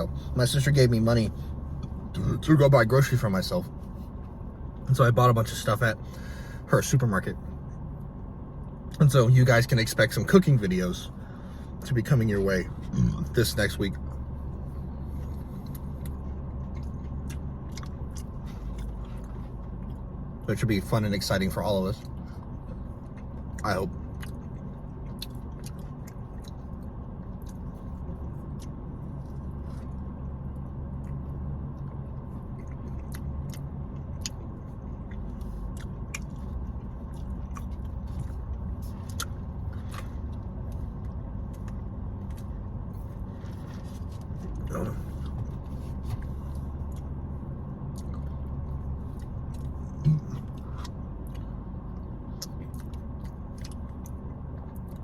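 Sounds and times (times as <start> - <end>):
car interior hum: 0.0 - 55.0
person chewing: 14.1 - 20.1, 22.0 - 55.0.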